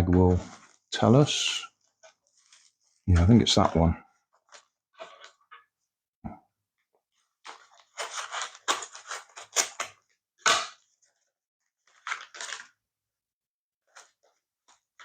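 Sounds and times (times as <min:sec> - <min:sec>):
packet crinkling: 0:07.5 - 0:10.1, 0:11.8 - 0:12.8.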